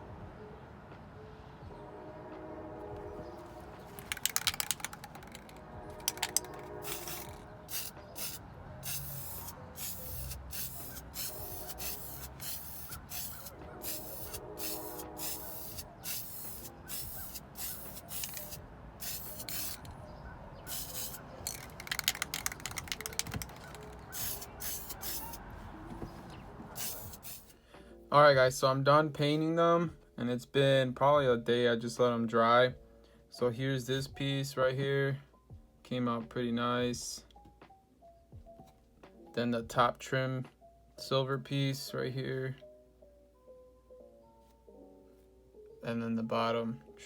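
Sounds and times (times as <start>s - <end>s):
light background music: 0.0s - 47.0s
spray paint hissing bursts: 4.0s - 19.9s, 20.7s - 25.4s, 26.8s - 27.5s.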